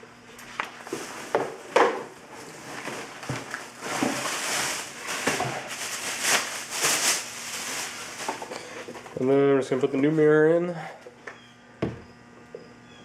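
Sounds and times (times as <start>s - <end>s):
rustling: 2.4s - 8.8s.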